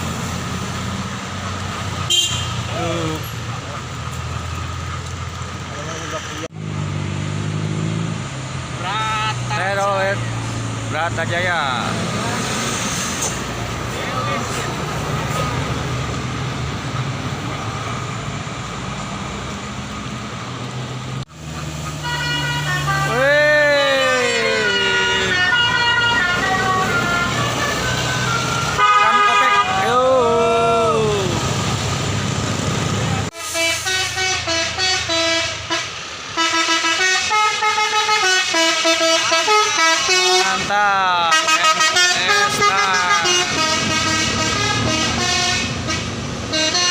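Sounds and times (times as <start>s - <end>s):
heavy diesel bus engine: 0.0s - 46.9s
tyre and road noise: 0.0s - 46.9s
multi-note bus horn tune: 2.1s - 2.6s, 21.9s - 30.2s, 33.4s - 40.7s, 41.3s - 46.9s.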